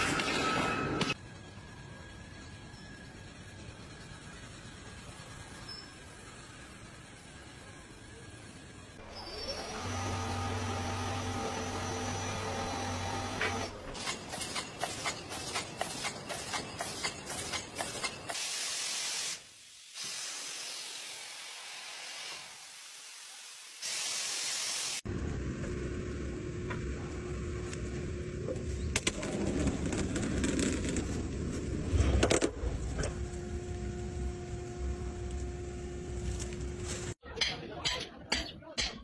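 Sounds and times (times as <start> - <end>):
spraying hiss: 14.4 - 25.0
held hum: 25.1 - 37.2.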